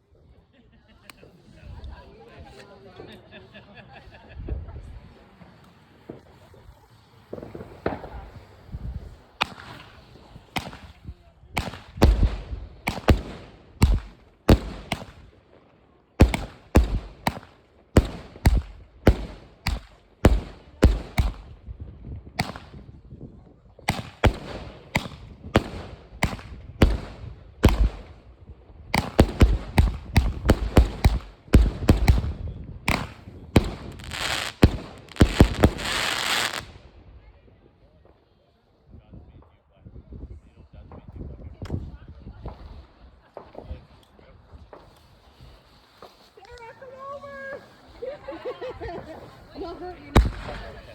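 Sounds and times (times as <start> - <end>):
fireworks crackling: 3.4 - 37.2, 41.7 - 50.9
fireworks bangs: 4.9 - 23.1, 23.8 - 37.2, 44.6 - 50.9.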